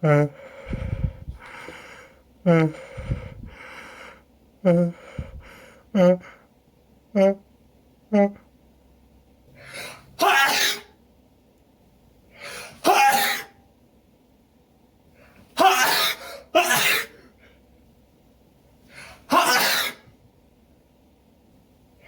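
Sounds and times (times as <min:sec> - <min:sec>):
person sneezing: 0:09.7 - 0:11.0, 0:12.5 - 0:13.6, 0:15.5 - 0:17.3, 0:19.2 - 0:20.1.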